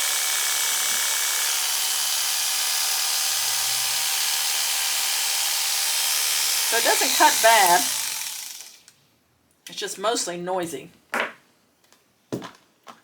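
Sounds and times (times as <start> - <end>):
electric clipper running: 0.0 - 8.8.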